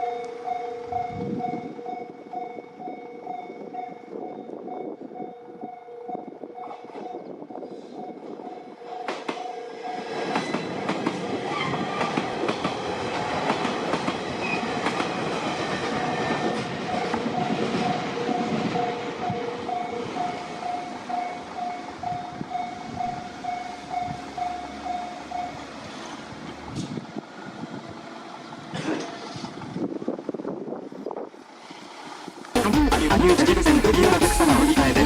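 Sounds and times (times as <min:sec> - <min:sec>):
crossing warning bell ringing: 0:00.0 - 0:13.1, 0:15.3 - 0:26.1
train wheels clattering over rails: 0:09.0 - 0:21.8.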